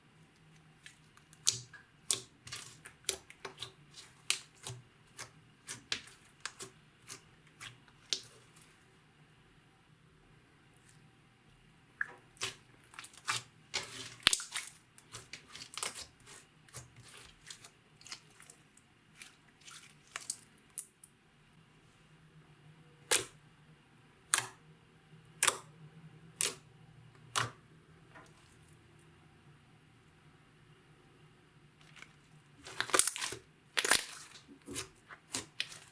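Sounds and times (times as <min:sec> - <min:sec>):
sharp slime pops: 0:23.0 - 0:23.4.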